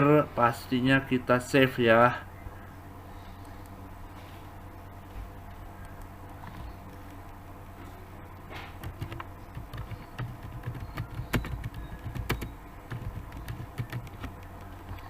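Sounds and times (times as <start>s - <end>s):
keyboard keystrokes: 8.8s - 15.0s.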